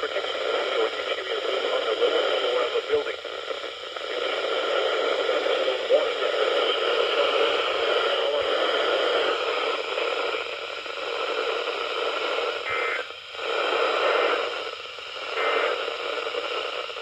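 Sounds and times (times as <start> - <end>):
radio static hiss: 0.0 - 17.0.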